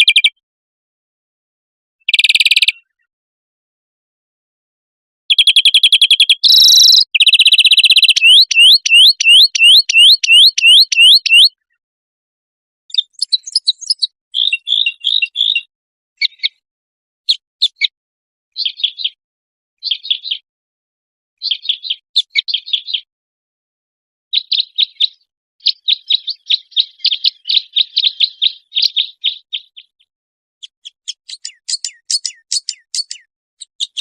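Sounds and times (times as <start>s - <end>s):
bird chirps and twitters: 0.0s - 0.4s, 2.0s - 3.1s, 5.3s - 11.8s, 12.9s - 19.2s, 19.8s - 20.5s, 21.4s - 23.1s, 24.3s - 34.0s
songbird trill: 0.0s - 0.4s, 2.0s - 3.1s, 5.3s - 11.8s, 12.9s - 16.6s, 17.3s - 18.0s, 18.6s - 19.2s, 19.8s - 20.4s, 21.4s - 23.1s, 24.3s - 34.0s
rising whistled bird notes: 5.3s - 11.6s, 12.9s - 16.5s.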